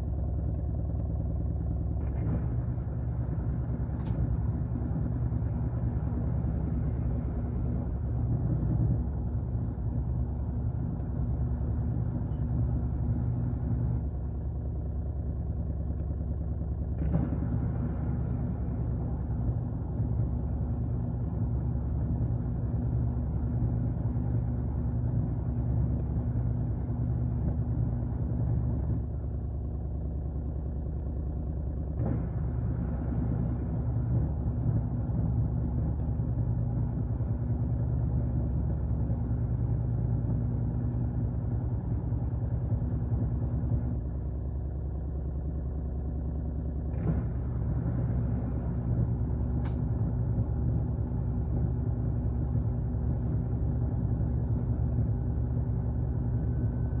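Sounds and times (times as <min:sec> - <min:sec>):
washing machine humming: 0:00.0 - 0:57.0
short click: 0:49.6 - 0:49.9.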